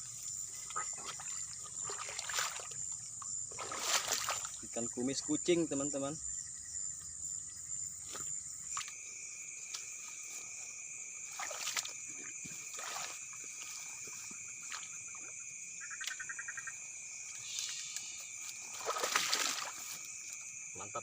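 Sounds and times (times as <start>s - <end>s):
insects and frogs droning: 0.0s - 21.0s
water splashing: 0.6s - 4.8s, 11.2s - 15.0s, 18.6s - 20.1s.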